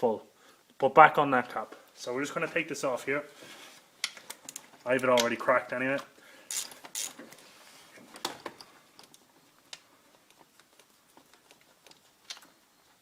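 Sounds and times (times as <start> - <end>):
small metallic clicks and ticks: 4.0 - 7.4, 8.4 - 12.6.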